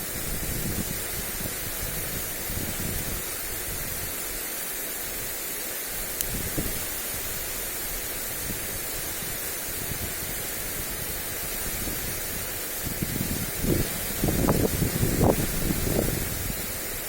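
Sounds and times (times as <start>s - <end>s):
wind buffeting microphone: 0.0s - 4.2s, 6.2s - 17.0s
sprinkler water spray hissing: 0.0s - 17.0s.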